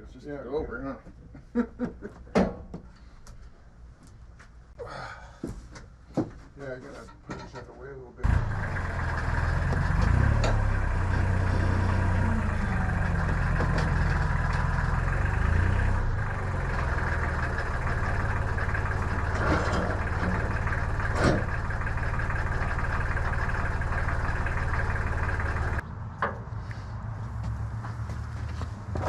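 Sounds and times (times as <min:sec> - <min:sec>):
engine idling: 0:08.2 - 0:25.8.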